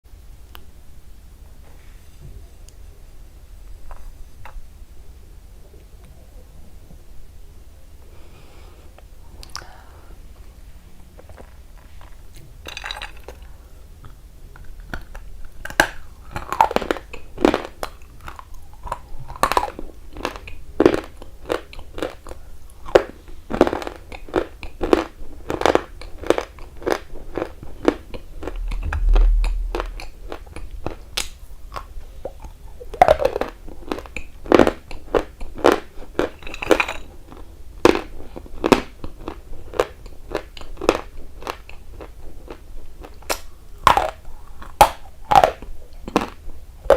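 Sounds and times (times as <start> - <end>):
person chewing hard food: 11.2 - 46.9
low thump: 28.5 - 31.2.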